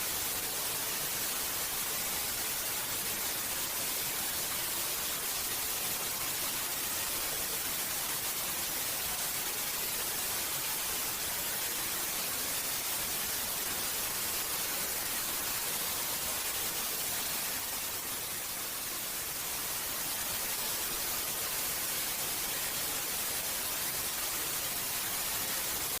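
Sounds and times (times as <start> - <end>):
hissing white noise: 0.0 - 26.0.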